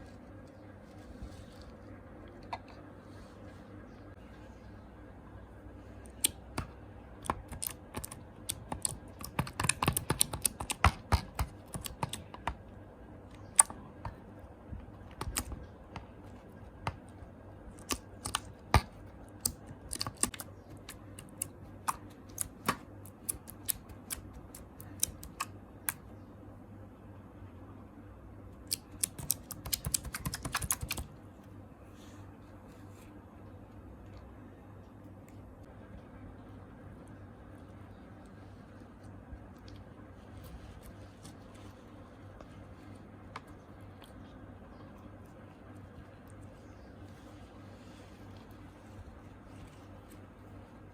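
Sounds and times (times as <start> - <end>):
sharp clicks and taps: 6.1 - 12.6, 28.7 - 31.1.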